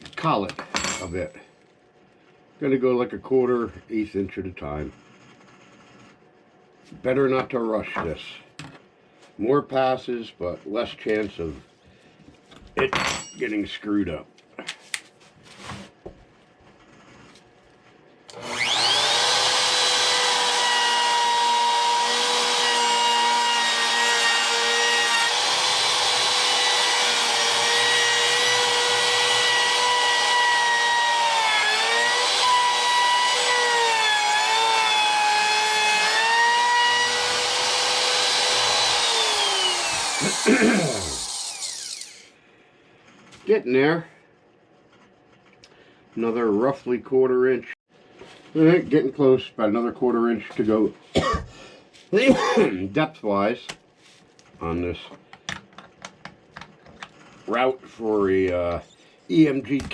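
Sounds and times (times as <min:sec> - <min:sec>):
router whining while cutting wood: 0:18.3 - 0:42.3.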